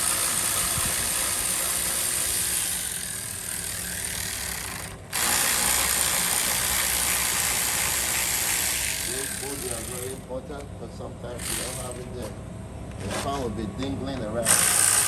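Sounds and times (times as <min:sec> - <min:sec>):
power gun spinning a bolt: 0:00.0 - 0:06.3.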